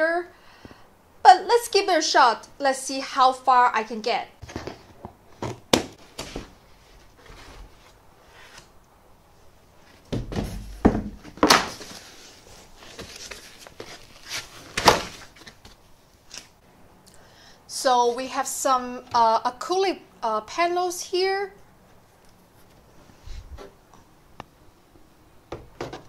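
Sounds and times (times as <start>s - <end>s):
cardboard scraping and rustling: 4.4s - 8.8s, 9.8s - 16.4s.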